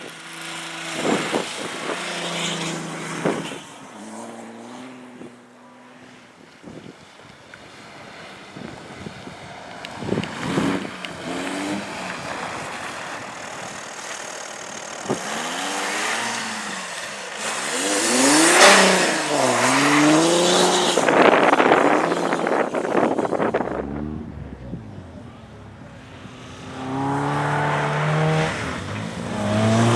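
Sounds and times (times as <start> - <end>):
race car engine revving: 9.4 - 29.9.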